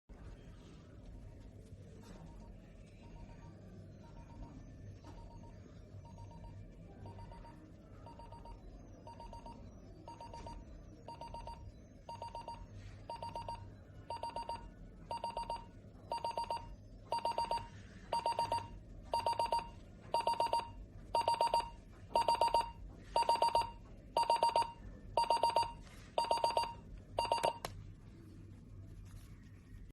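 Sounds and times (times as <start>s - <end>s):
alarm clock beeping: 6.1s - 27.7s.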